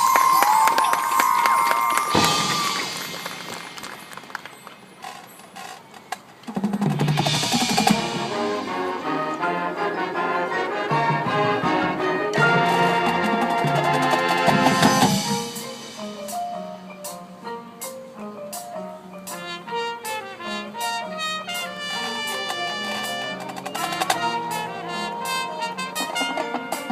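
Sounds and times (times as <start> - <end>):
marching band playing: 0.0 - 26.9
drum hits: 2.0 - 4.6, 6.5 - 9.3, 12.4 - 16.6.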